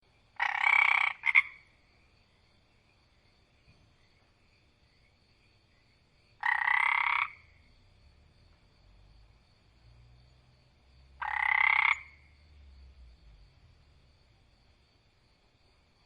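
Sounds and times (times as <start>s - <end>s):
frog croaking: 0.4s - 1.8s, 6.4s - 7.8s, 11.0s - 13.0s.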